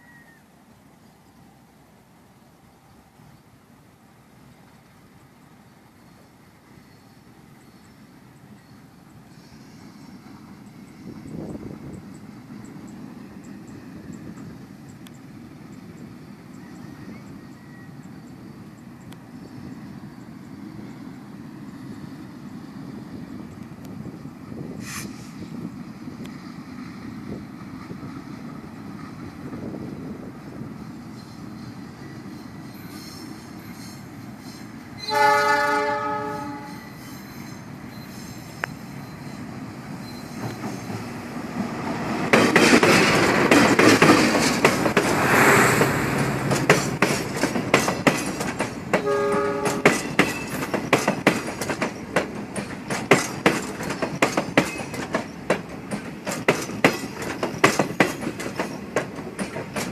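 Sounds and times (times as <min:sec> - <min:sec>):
train horn: 0:35.0 - 0:37.0, 0:49.0 - 0:50.1
train wheels clattering: 0:40.0 - 0:59.9.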